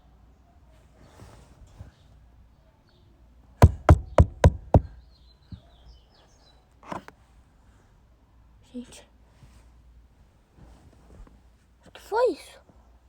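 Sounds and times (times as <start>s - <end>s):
loud knocking in car: 3.6s - 4.9s.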